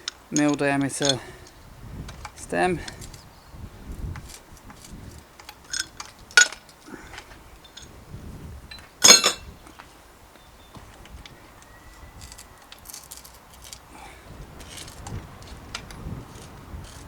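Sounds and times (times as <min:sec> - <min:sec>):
metal tools clinking: 0:00.0 - 0:03.2, 0:04.2 - 0:08.0, 0:08.7 - 0:09.5, 0:12.2 - 0:14.0, 0:14.6 - 0:17.0
ringing metal clank: 0:00.4 - 0:01.4, 0:08.7 - 0:09.5.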